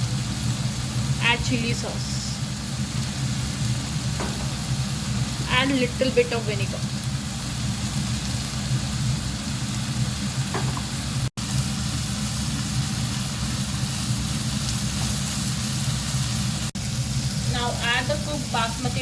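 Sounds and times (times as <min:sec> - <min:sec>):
vegetables sizzling in a pan: 0:00.0 - 0:19.0.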